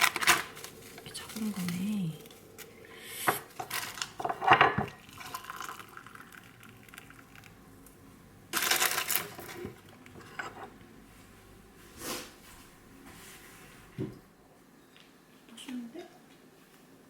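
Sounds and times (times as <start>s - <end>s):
rustling scrape: 9.2s - 13.9s.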